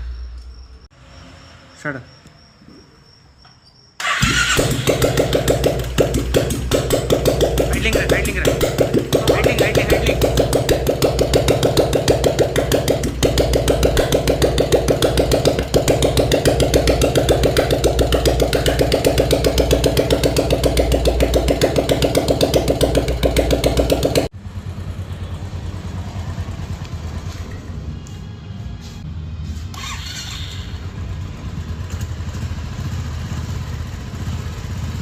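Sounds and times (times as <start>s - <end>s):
motorcycle engine idling: 4.0s - 28.4s, 29.7s - 35.0s
quieter low engine sound: 4.6s - 29.8s.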